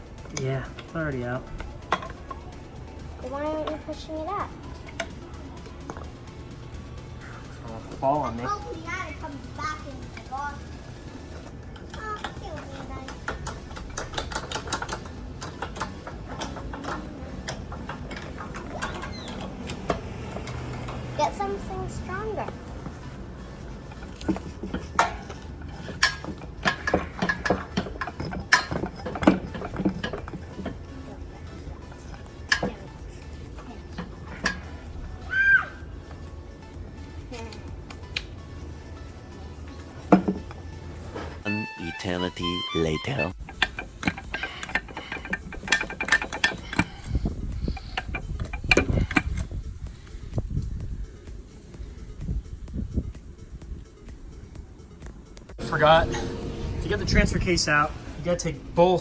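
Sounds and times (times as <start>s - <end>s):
metal tools clinking: 0.0s - 35.3s, 39.5s - 41.4s, 43.4s - 50.4s.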